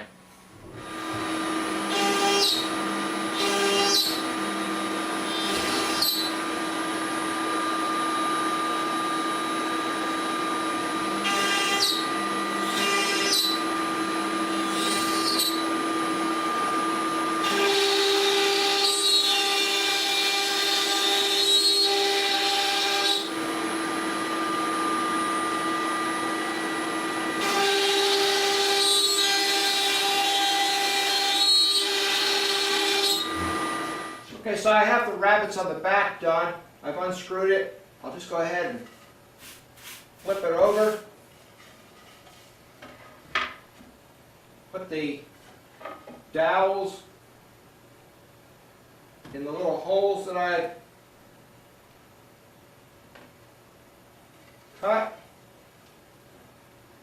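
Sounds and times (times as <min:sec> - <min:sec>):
router bit cutting wood: 0:00.8 - 0:34.3
router spindle whining: 0:00.8 - 0:34.3.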